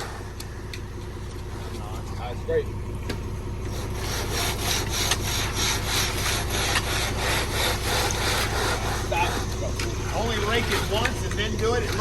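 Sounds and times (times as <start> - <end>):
low engine hum: 0.0 - 12.0
tools scraping wet concrete: 3.6 - 12.0.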